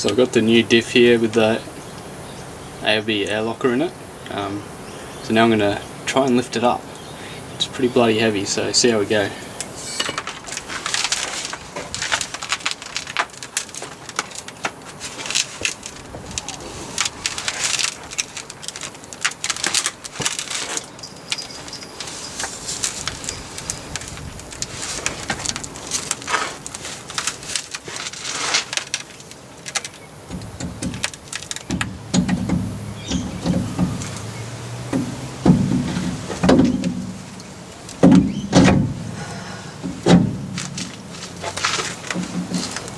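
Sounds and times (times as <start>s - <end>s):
metal clicks and knocks: 28.7s - 39.2s, 39.8s - 42.9s.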